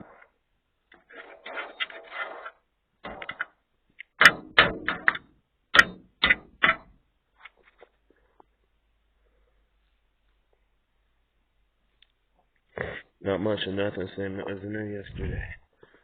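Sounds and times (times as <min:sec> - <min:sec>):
rustling: 0:00.0 - 0:03.6.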